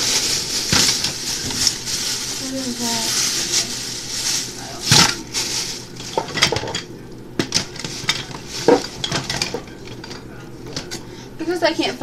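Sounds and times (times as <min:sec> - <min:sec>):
cutlery clinking and clattering: 0:04.9 - 0:05.2, 0:06.0 - 0:11.0.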